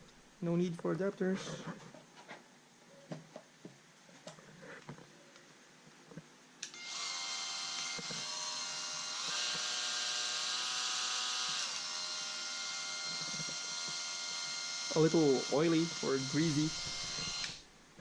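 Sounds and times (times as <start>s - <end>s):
oscillating multi-tool whine: 6.7s - 17.7s.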